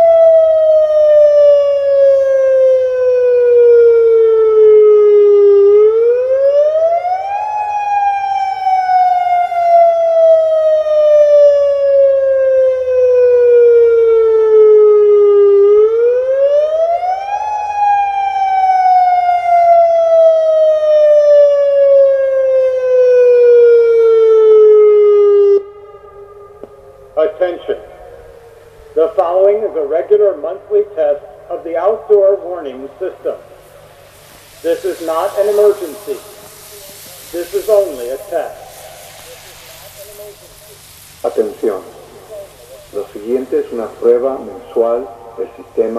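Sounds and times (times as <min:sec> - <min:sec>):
warning siren wailing: 0:00.0 - 0:32.5.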